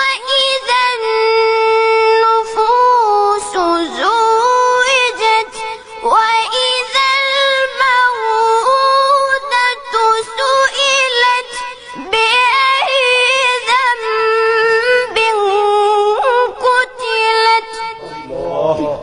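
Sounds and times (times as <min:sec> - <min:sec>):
man reciting melodically: 0:17.3 - 0:19.0.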